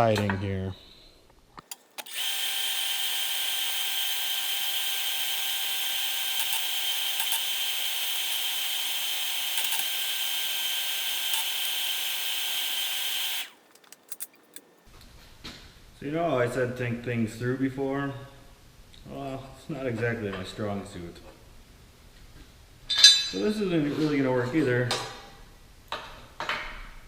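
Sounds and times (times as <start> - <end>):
power tool whining: 1.6 - 14.9
small clicks: 1.6 - 14.9.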